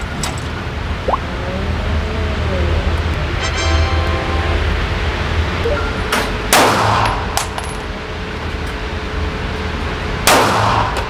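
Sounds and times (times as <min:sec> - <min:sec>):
pistol shots with echo: 0:06.4 - 0:07.8, 0:10.2 - 0:11.0.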